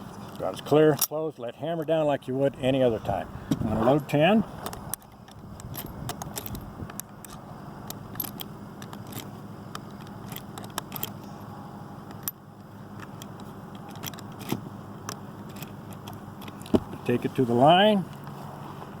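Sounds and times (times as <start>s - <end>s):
low background hum: 0.0s - 19.0s
cartridges loading into rifle clicks: 4.6s - 11.3s, 12.0s - 16.8s.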